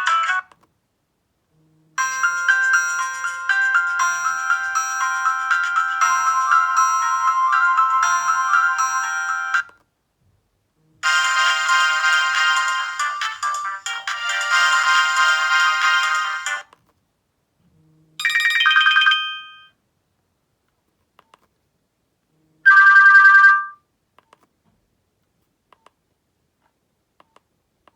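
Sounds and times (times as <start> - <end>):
electronic ringtone melody: 2.0 - 9.7, 11.0 - 16.6, 18.2 - 19.7, 22.7 - 23.8.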